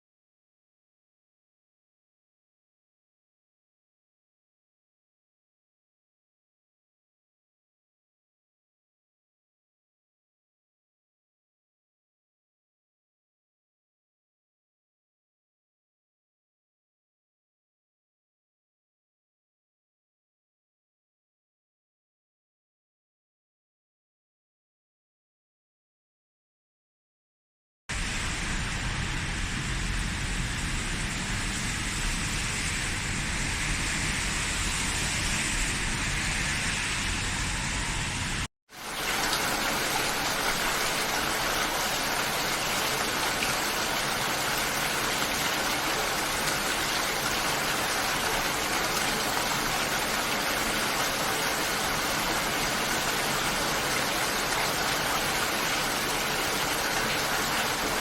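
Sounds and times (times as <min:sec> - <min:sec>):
steady rain: 0:27.9 - 0:36.5, 0:38.3 - 0:58.0.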